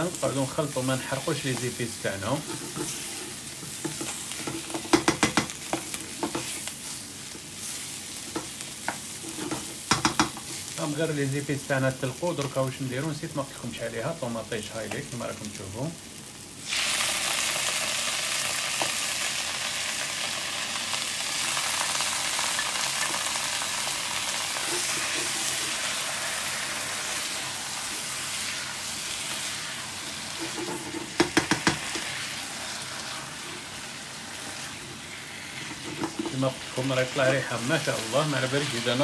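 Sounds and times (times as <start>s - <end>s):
food sizzling in a pan: 0.0s - 39.0s.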